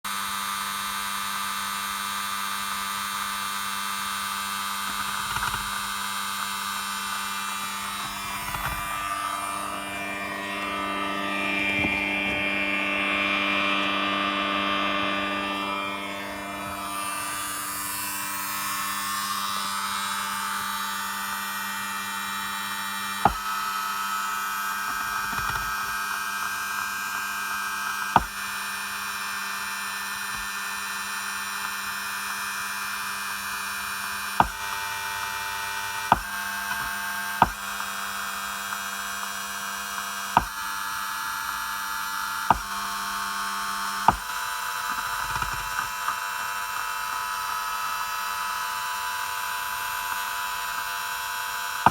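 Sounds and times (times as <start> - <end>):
electronic buzz with tones: 0.2 - 32.6.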